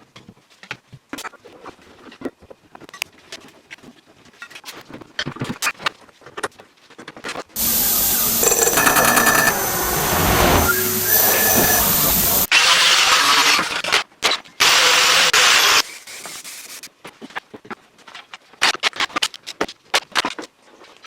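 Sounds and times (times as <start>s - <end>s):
loud machinery noise: 7.6s - 12.5s.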